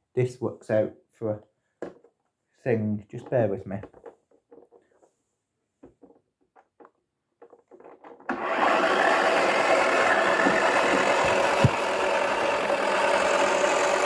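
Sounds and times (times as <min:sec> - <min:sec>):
toy washing machine motor whirring: 0:08.2 - 0:14.0.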